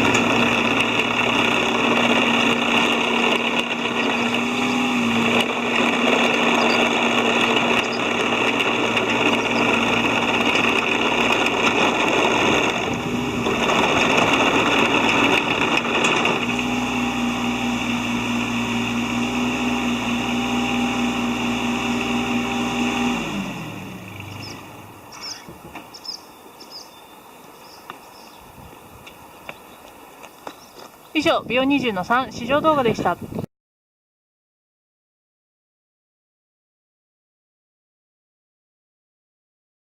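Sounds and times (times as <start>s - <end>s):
diesel engine running and winding down: 0.0s - 25.6s.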